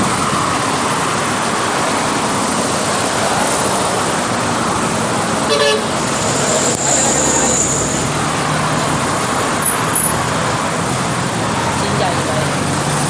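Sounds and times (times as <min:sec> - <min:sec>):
road traffic noise: 0:00.0 - 0:13.0
short horn toot: 0:05.5 - 0:08.1.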